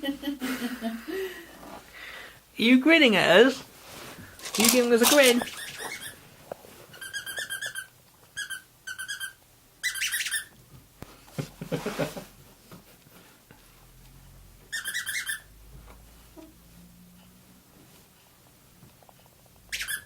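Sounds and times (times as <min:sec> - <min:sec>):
bird chirping: 0:05.4 - 0:06.2, 0:06.9 - 0:10.6, 0:14.7 - 0:15.5, 0:19.7 - 0:20.0.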